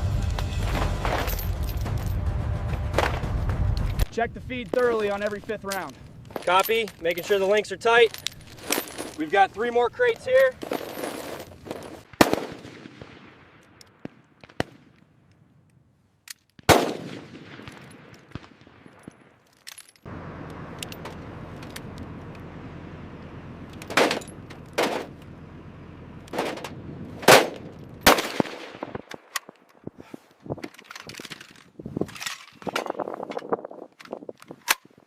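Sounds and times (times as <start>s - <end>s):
steady low rumble: 0.0s - 12.1s, 20.0s - 29.1s
machine gun shots: 27.2s - 29.0s.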